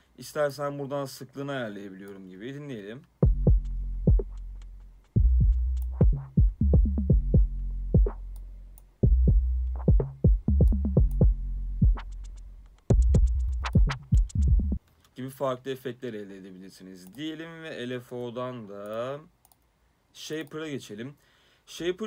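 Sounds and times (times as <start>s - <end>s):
electronic drum loop: 3.2s - 14.8s
low synth bass: 3.2s - 14.8s.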